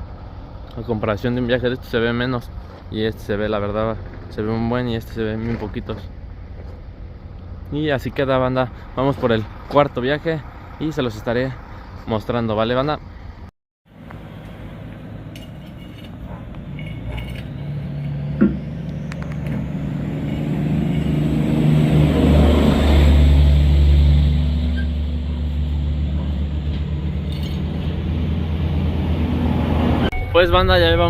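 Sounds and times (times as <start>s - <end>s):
truck diesel engine running: 6.1s - 12.0s, 13.9s - 31.0s.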